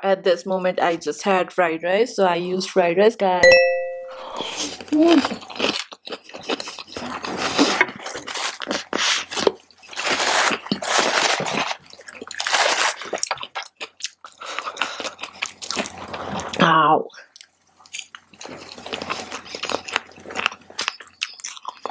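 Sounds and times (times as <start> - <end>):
person chewing food: 4.5 - 16.6, 17.3 - 21.9.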